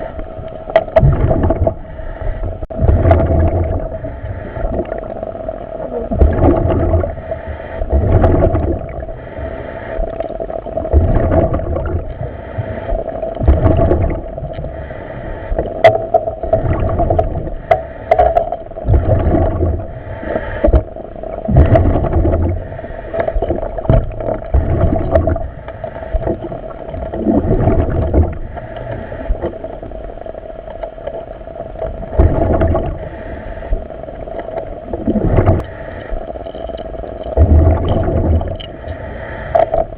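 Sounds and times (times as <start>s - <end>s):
exhaust bubbles: 1.0s - 2.0s, 2.6s - 9.3s, 10.1s - 14.8s, 15.7s - 17.8s, 18.8s - 29.6s, 32.0s - 33.1s, 34.8s - 35.7s, 37.4s - 38.7s
diver breathing in helmet: 1.8s - 2.7s, 3.8s - 5.1s, 7.1s - 8.2s, 8.9s - 10.4s, 12.0s - 13.3s, 14.6s - 15.8s, 16.5s - 23.7s, 24.4s - 26.7s, 28.3s - 29.9s, 32.8s - 34.2s, 35.5s - 36.4s, 38.8s - 39.9s.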